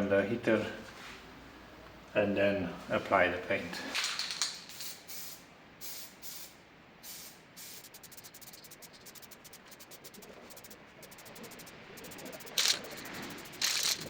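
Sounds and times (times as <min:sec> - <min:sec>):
spray paint can hissing: 0:04.7 - 0:14.0
fast faint ticking: 0:07.6 - 0:14.0.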